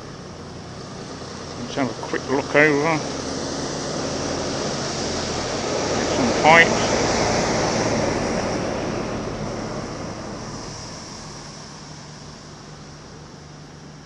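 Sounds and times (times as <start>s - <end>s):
drone propellers whirring: 0.0s - 14.0s.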